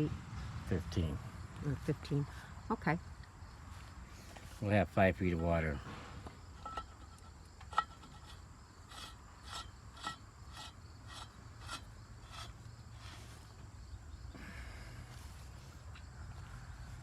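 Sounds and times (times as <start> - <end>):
metal pipe clinks and scrapes: 6.4 - 13.4.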